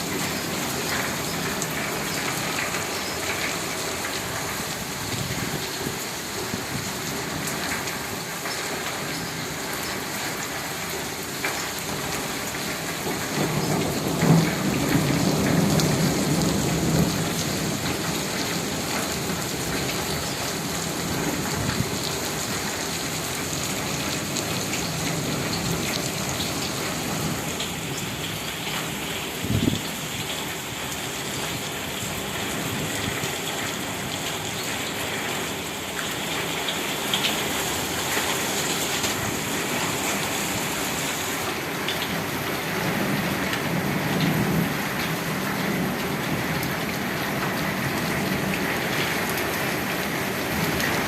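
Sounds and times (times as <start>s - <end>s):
rain splashing on surfaces: 0.0s - 51.0s.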